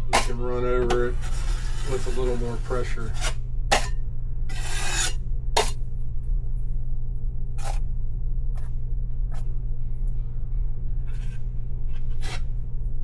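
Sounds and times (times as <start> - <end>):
steady low hum: 0.0 - 13.0
taping knife scraping drywall tape: 1.2 - 2.4.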